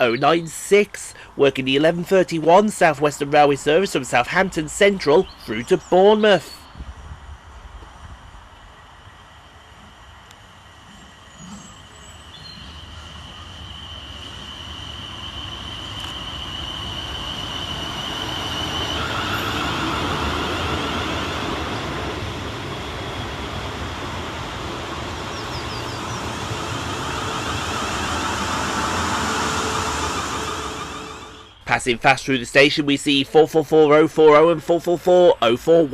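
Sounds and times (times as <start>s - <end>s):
electric train whine: 0.0s - 31.8s
wheel and rail rumble: 6.6s - 31.7s.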